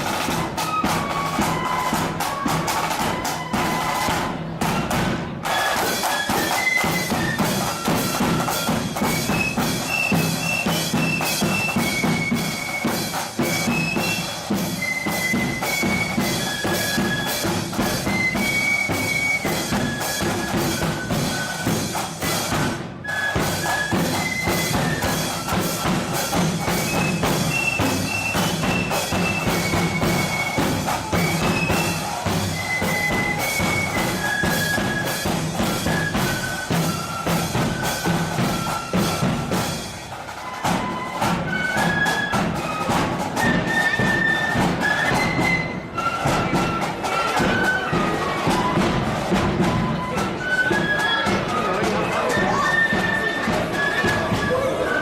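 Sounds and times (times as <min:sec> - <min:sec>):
rapid drumming with bass drum: 0:00.0 - 0:41.1
flutes playing march melody: 0:00.0 - 0:55.0.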